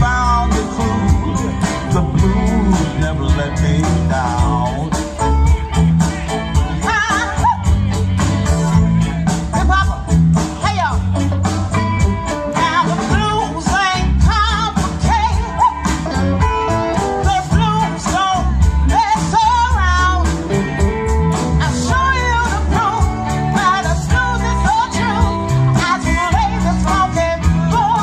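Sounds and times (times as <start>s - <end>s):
woman singing: 0.0s - 8.8s, 9.5s - 11.0s, 12.5s - 16.2s, 16.9s - 20.6s, 21.4s - 28.0s
bass: 0.0s - 28.0s
electric guitar: 0.0s - 28.0s
steady drum beat: 0.0s - 28.0s.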